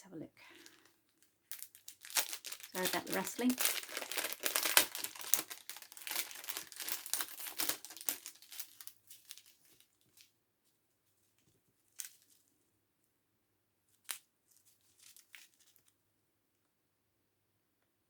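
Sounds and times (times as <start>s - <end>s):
plastic packaging rustling: 0.5s - 10.3s, 14.5s - 15.9s.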